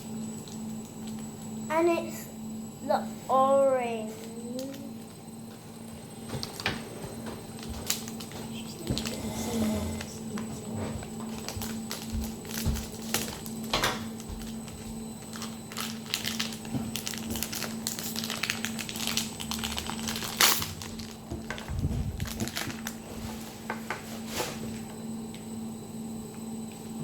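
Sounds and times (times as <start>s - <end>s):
steady low hum: 0.0s - 27.0s
plastic packaging crinkling: 6.4s - 6.7s, 7.5s - 9.2s, 11.3s - 23.4s
packs being torn open: 7.6s - 9.2s, 15.3s - 23.0s.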